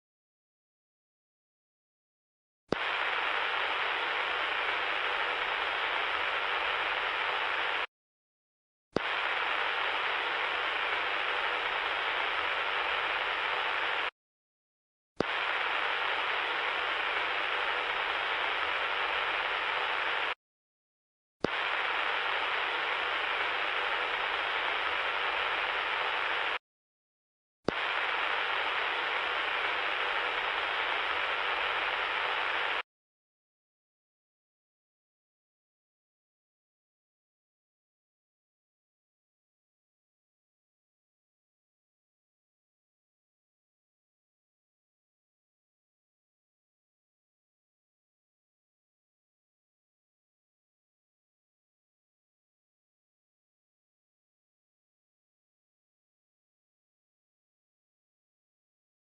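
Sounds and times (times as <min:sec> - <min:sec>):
steady hiss: 0:27.7 - 0:32.8.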